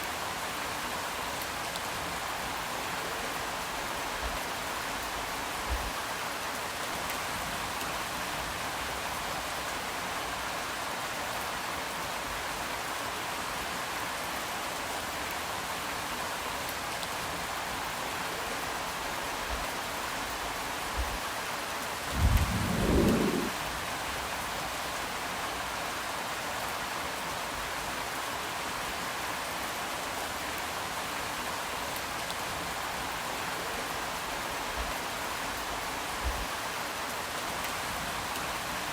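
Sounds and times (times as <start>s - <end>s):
steady rain: 0.0s - 38.9s
low rumble: 22.1s - 23.7s.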